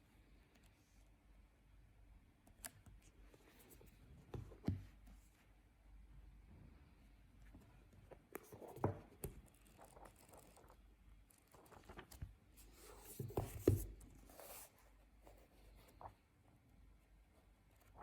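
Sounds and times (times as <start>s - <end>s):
soft rustling and scraping: 7.4s - 16.2s.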